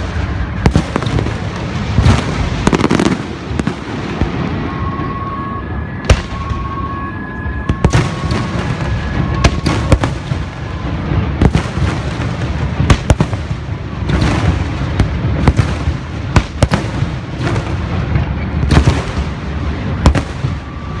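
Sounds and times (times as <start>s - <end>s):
crackling of small fireworks bursts: 0.0s - 21.0s.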